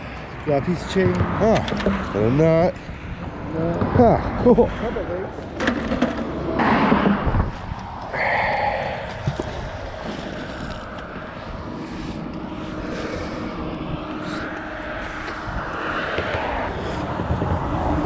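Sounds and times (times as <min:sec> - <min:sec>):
highway traffic rushing: 0:00.0 - 0:18.0
faint engine hum: 0:08.0 - 0:18.0.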